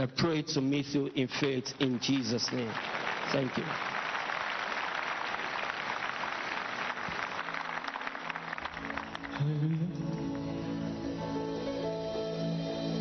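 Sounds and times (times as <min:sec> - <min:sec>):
congregation applauding: 0:01.8 - 0:10.6
instrumental music with guitar: 0:09.1 - 0:13.0.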